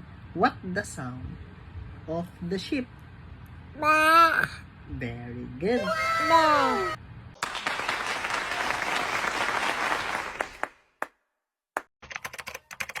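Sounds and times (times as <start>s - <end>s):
applause: 7.4s - 11.2s.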